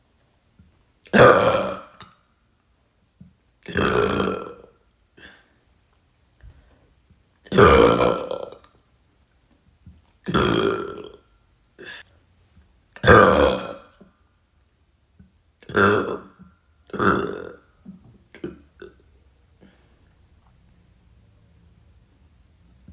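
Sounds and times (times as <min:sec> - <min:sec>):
woman burping: 0:01.1 - 0:02.0, 0:03.7 - 0:04.6, 0:07.5 - 0:08.6, 0:10.3 - 0:11.2, 0:13.0 - 0:14.0, 0:15.7 - 0:17.6, 0:18.4 - 0:19.0.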